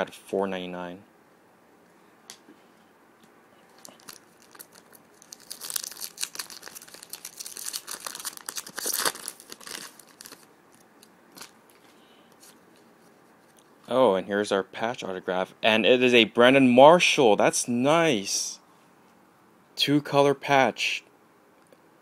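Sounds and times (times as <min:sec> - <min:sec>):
wrapper tearing and crinkling: 0:03.8 - 0:11.8.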